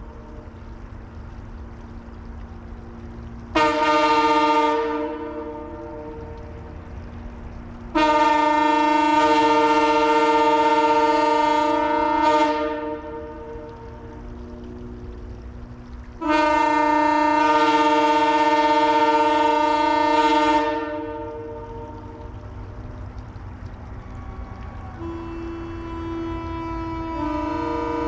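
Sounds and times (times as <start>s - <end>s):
faint steady hum: 0.0s - 28.0s
locomotive air horn chord: 3.5s - 6.6s, 7.9s - 14.1s, 16.2s - 22.4s, 24.4s - 28.0s.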